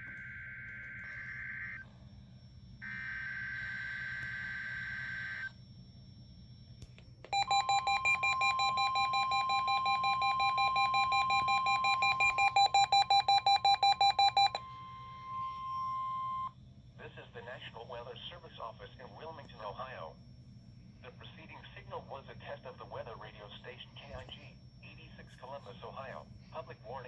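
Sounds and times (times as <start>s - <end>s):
steady warning alarm tone: 0.0s - 5.6s, 7.3s - 16.6s
click: 6.8s - 7.4s
rapid beeping: 7.4s - 16.5s.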